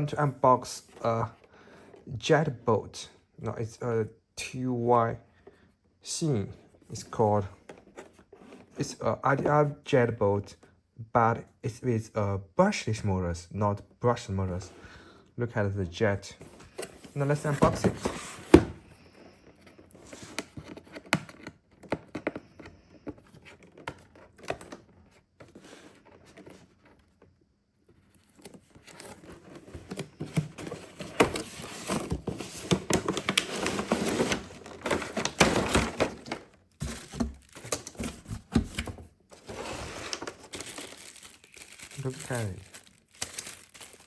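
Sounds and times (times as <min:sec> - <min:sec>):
packaging rustling: 0:28.1 - 0:44.0.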